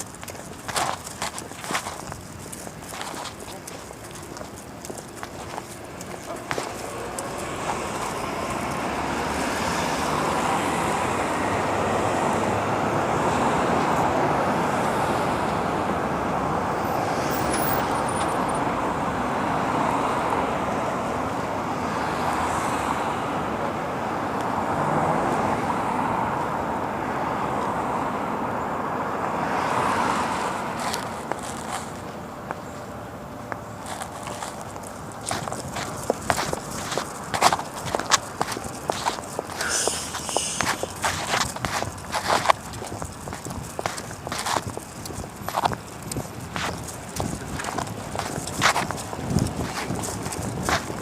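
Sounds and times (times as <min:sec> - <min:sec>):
vehicles passing on wet road: 0:00.0 - 0:51.0.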